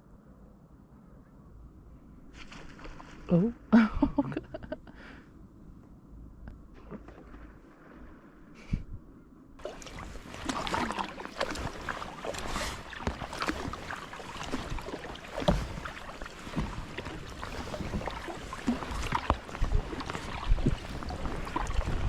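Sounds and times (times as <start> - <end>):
paddle splashes: 9.6 - 22.0
water slapping against hull: 9.6 - 22.0.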